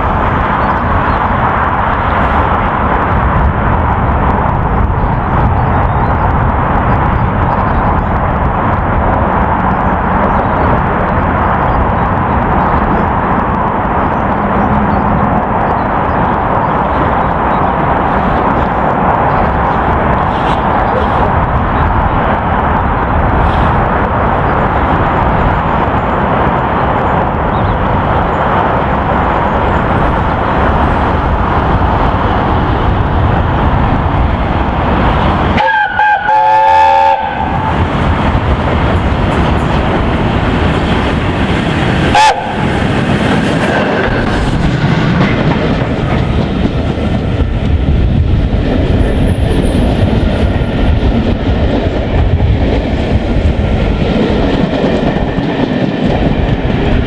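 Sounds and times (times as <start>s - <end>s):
train wheels clattering over rails: 0.0s - 57.0s
steam locomotive whistle: 35.6s - 37.7s, 42.1s - 42.7s.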